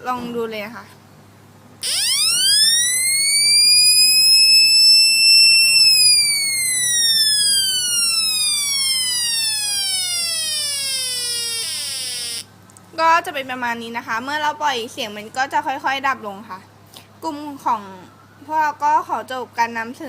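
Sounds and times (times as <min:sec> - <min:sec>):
electronic siren wailing: 0:01.8 - 0:12.5.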